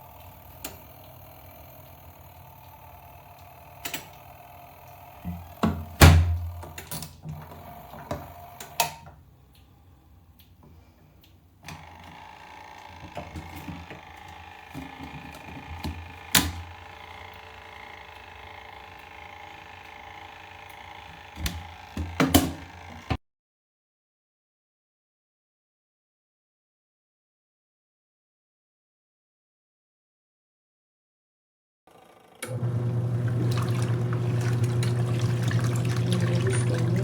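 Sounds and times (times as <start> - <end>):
washing machine motor humming: 0.0 - 23.2, 32.3 - 37.0.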